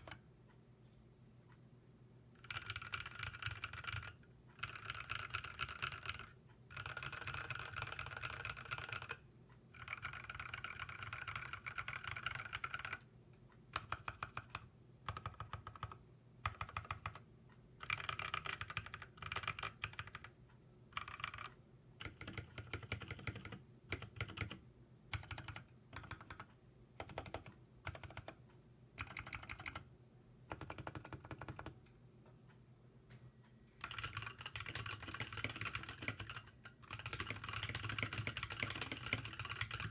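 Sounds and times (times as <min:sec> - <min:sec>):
mechanical keyboard typing: 0:00.0 - 0:00.2, 0:02.4 - 0:09.2, 0:09.8 - 0:13.0, 0:13.7 - 0:17.2, 0:17.8 - 0:28.4, 0:29.0 - 0:29.9, 0:30.5 - 0:31.8, 0:33.8 - 0:39.9.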